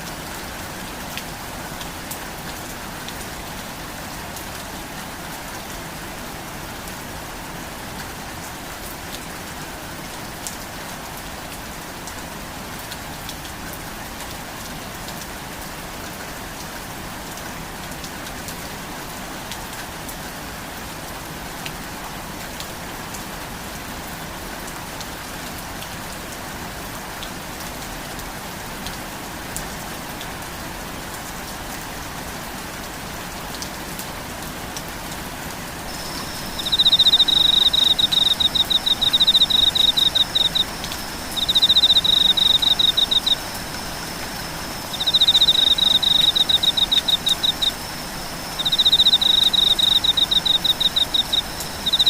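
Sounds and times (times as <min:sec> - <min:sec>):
rainfall hiss: 0:00.0 - 0:52.0
faint high whine: 0:35.9 - 0:52.0
pulsed insect trill: 0:35.9 - 0:52.0.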